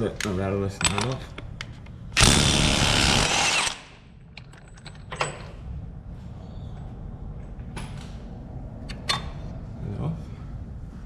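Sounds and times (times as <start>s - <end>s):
impact wrench burst: 2.2s - 4.0s.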